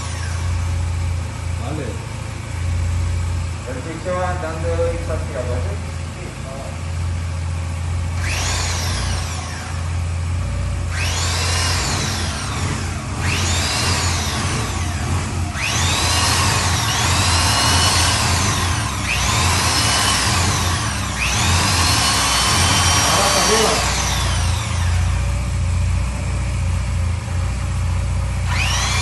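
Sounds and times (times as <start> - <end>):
electric drill pulsing: 0.0 - 0.9, 8.1 - 25.6, 28.4 - 29.0.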